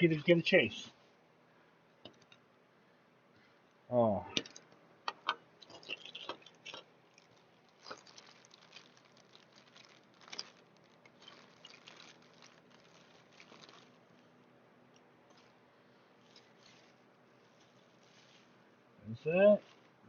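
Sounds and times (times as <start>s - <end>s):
packaging rustling and crinkling: 5.7s - 14.5s, 15.3s - 15.6s, 16.2s - 18.7s, 19.6s - 20.0s.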